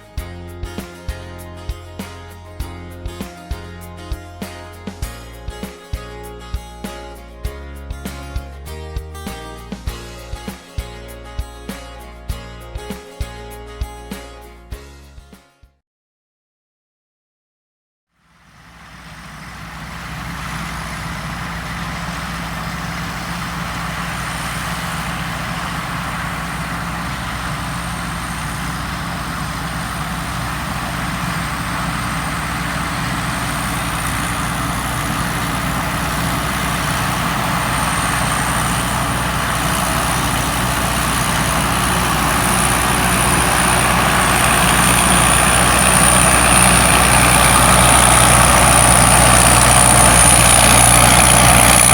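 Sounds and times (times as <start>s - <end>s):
combine harvester running: 18.3s - 51.9s.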